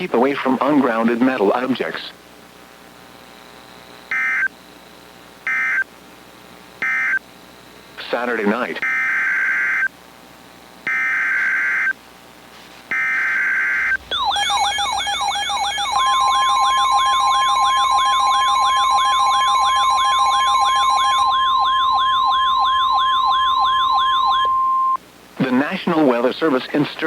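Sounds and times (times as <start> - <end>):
screeching digital data tones: 13.2 - 25.0
warbling siren-like alert signal: 13.2 - 25.0.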